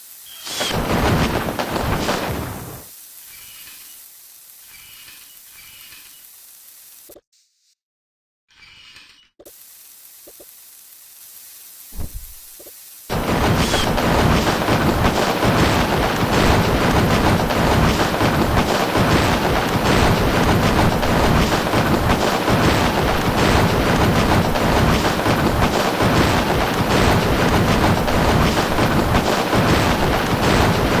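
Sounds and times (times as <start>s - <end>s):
fireworks bangs and crackling: 0.4s - 2.9s, 12.0s - 31.0s.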